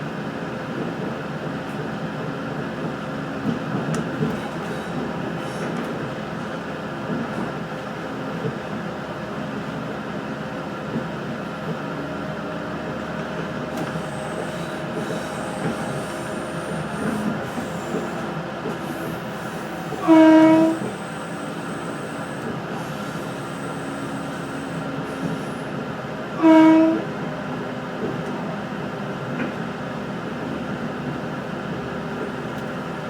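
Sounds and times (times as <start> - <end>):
train wheels rumbling: 10.9 - 25.9
train horn blasts: 19.8 - 22.5, 26.4 - 27.2.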